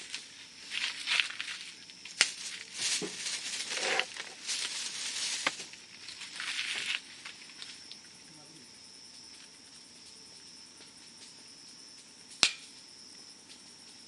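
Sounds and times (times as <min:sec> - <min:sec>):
campfire crackling and popping: 0:00.0 - 0:04.7, 0:09.2 - 0:13.7
hissing and rustling: 0:00.0 - 0:08.0.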